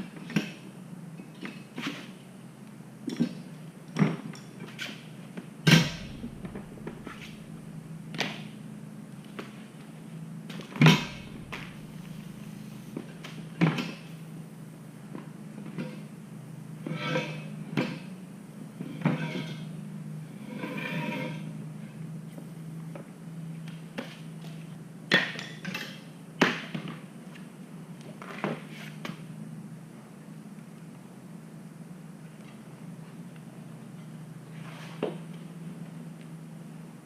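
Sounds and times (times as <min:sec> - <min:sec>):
steady low hum: 0:05.7 - 0:19.0.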